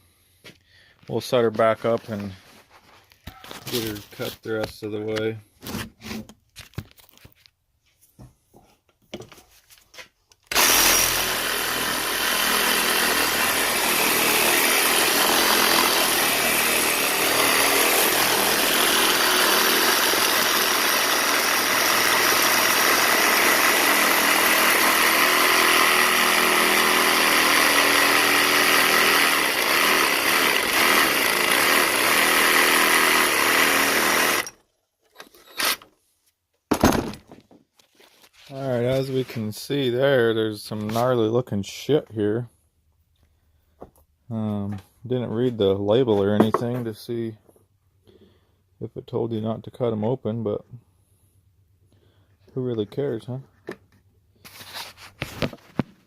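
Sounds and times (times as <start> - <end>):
reciprocating saw cutting plastic: 10.5 - 34.6.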